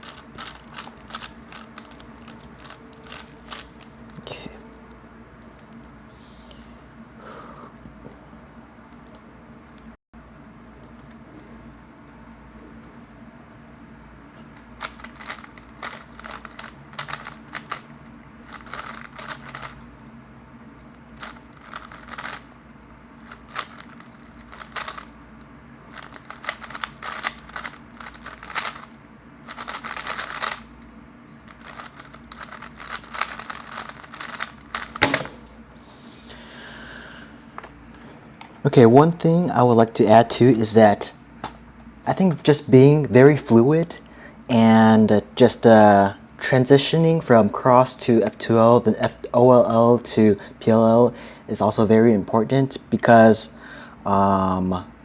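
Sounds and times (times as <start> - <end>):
puzzle cube clicking: 0.0 - 4.2, 14.8 - 17.8, 18.5 - 19.8, 21.2 - 22.4, 23.2 - 25.1, 25.9 - 30.6, 31.6 - 35.5
sharp knock: 35.0 - 35.5.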